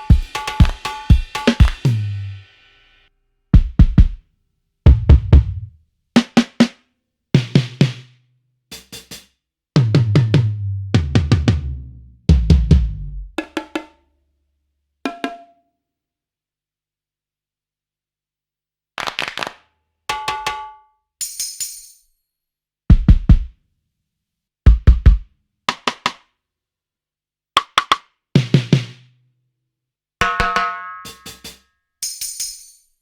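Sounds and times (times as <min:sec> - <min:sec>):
acoustic drum kit fills: 0:00.0 - 0:02.7, 0:09.8 - 0:13.4.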